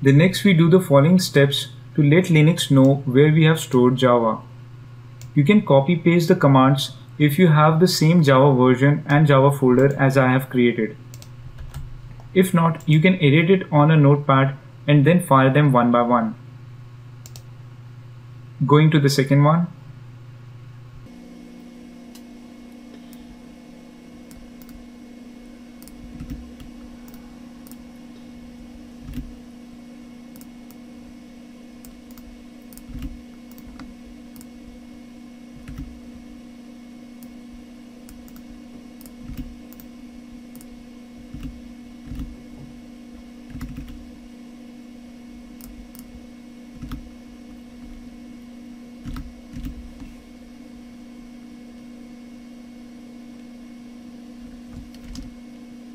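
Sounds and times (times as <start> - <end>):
low electrical hum: 0.0 - 55.9
keyboard and mouse clicks: 25.8 - 27.8, 31.8 - 34.5, 35.6 - 35.9, 38.1 - 39.9, 41.3 - 42.3, 43.5 - 44.0, 46.8 - 47.1, 49.0 - 50.1, 54.7 - 55.3.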